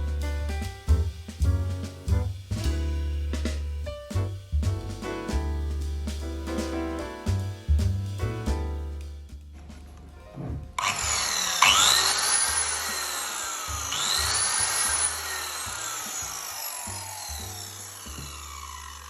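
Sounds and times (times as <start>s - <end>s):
circular saw cutting wood: 10.8s - 19.0s.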